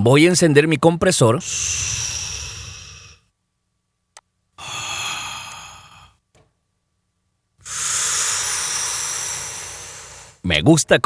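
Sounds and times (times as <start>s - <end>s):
breath whoosh: 1.4s - 3.3s, 4.6s - 6.2s, 7.6s - 10.4s.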